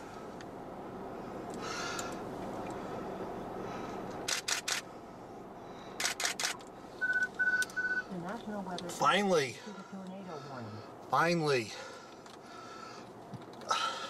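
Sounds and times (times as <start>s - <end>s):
low background hum: 0.0s - 14.0s
camera shutter clicks: 4.3s - 4.9s, 6.0s - 6.7s.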